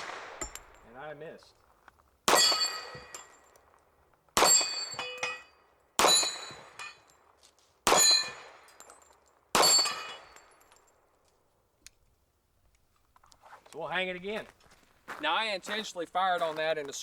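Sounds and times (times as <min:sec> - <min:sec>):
pistol shots: 0:00.0 - 0:01.0, 0:02.2 - 0:03.4, 0:04.4 - 0:05.0, 0:06.0 - 0:06.9, 0:07.8 - 0:08.8, 0:09.5 - 0:10.5
steel plate ringing clang: 0:02.3 - 0:03.5, 0:04.4 - 0:07.1, 0:07.9 - 0:08.9, 0:09.6 - 0:10.6.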